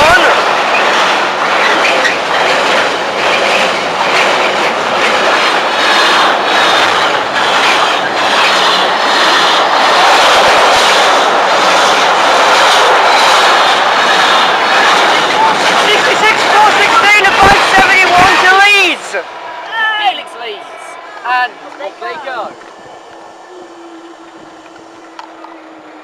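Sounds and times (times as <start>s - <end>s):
wheels clattering over rail joints: 0.0s - 18.7s
freight train rolling past: 0.0s - 26.0s.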